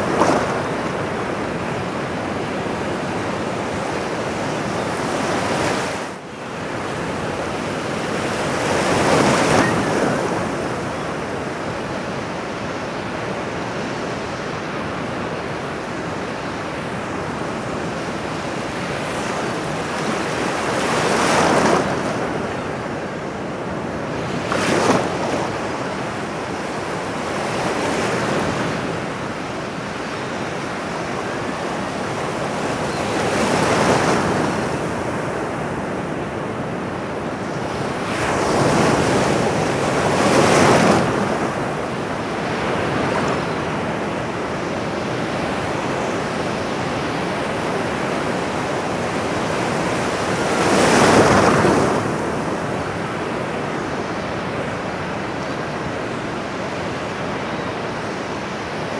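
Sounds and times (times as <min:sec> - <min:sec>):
ocean waves breaking: 0:06.6 - 0:12.1.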